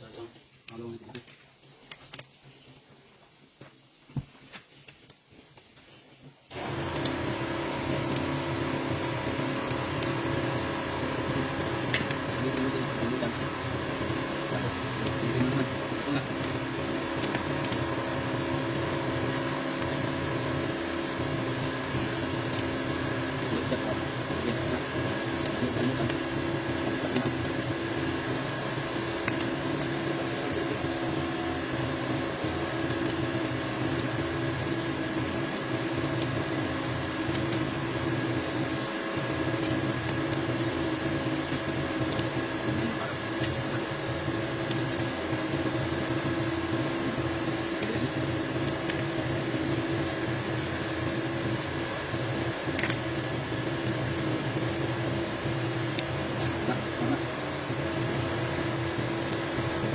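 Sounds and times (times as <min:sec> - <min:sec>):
steady motor hum: 0:06.5 - 0:59.9.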